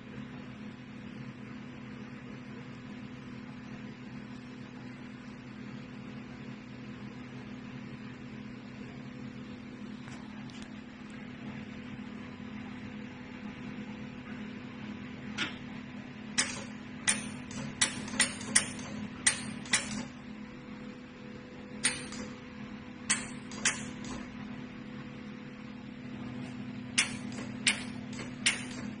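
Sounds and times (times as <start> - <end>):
machine humming: 14.8 - 29.0
laser welder snapping: 16.4 - 20.2, 21.8 - 22.4, 23.1 - 24.3, 27.0 - 29.0.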